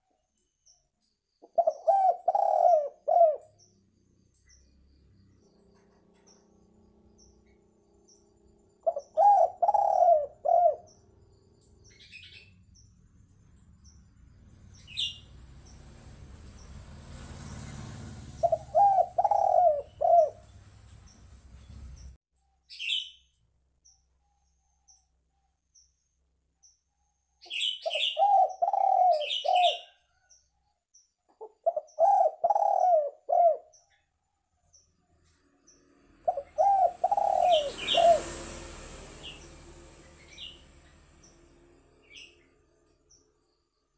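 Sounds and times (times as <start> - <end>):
small birds chirping: 0.0 - 38.5, 39.2 - 43.9
dove cooing: 1.4 - 3.6, 8.8 - 11.0, 18.0 - 20.7, 27.8 - 30.0, 31.4 - 33.8, 36.2 - 38.4.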